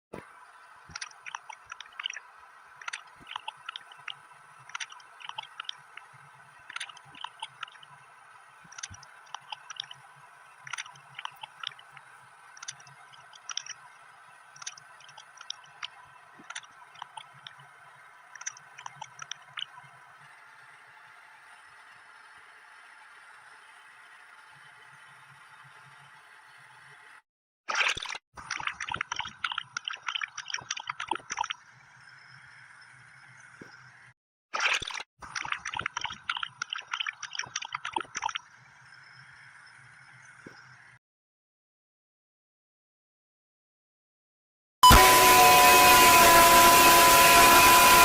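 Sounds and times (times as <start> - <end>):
sharp clicks and crackles: 2.8 - 6.1.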